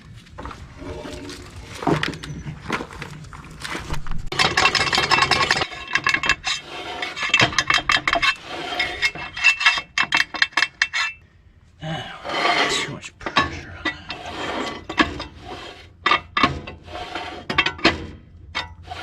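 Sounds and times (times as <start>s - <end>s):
metal tools clinking and scraping: 4.3s - 11.2s.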